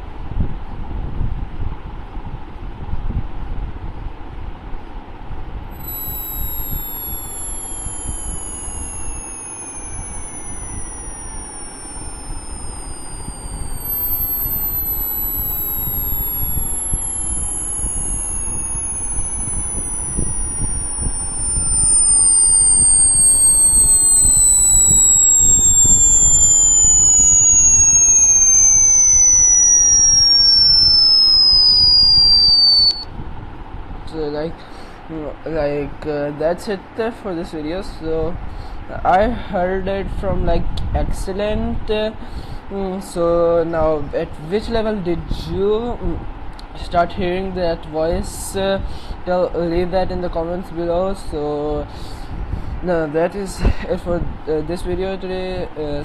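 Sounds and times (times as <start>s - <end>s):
sine tones gliding downward: 5.7s - 33.1s.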